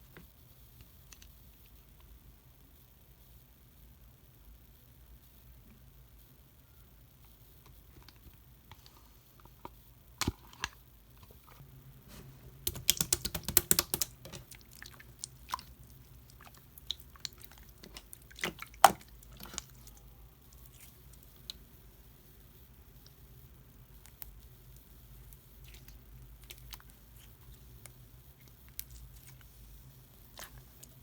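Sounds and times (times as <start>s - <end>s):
slime kneaded with sticky clicks: 12.6s - 15.7s, 16.3s - 19.9s.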